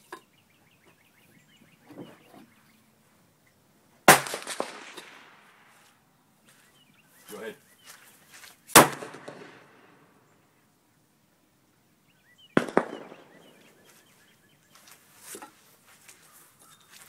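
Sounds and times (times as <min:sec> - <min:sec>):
launcher firing sharp bangs: 0:04.1 - 0:05.4, 0:08.8 - 0:09.8, 0:12.6 - 0:13.5.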